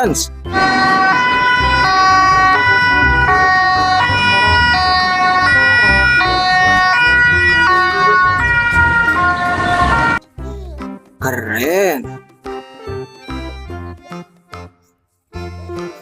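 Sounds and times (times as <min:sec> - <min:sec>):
toy siren hi-lo: 0:00.5 - 0:10.2.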